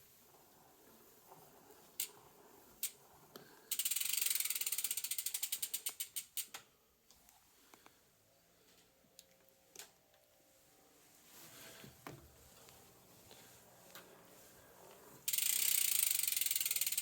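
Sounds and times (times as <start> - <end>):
bicycle drivetrain ratchet clicks: 2.0 - 2.2, 2.8 - 3.0, 3.7 - 6.7, 15.2 - 17.0.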